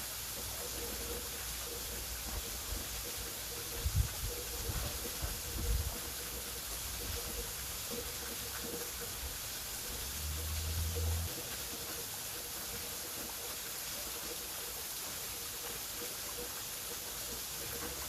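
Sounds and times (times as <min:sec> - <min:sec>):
waterfall rushing: 0:08.0 - 0:18.0.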